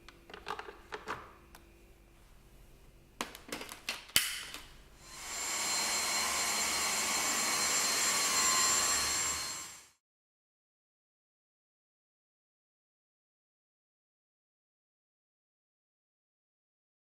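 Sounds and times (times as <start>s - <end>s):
vacuum cleaner whine: 5.0s - 10.0s.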